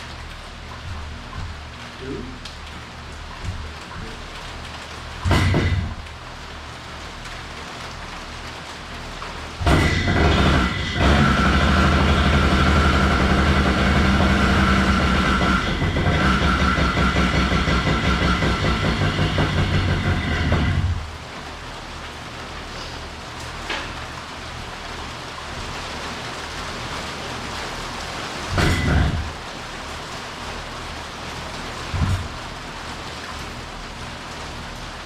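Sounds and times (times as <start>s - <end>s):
two-stroke engine running rough: 9.7s - 21.0s.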